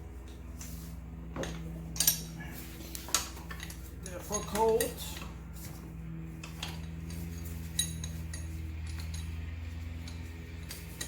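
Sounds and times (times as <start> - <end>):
steady low hum: 0.0 - 11.0
metal tools clinking on metal: 0.3 - 11.0
sharp ringing clink: 6.5 - 11.0.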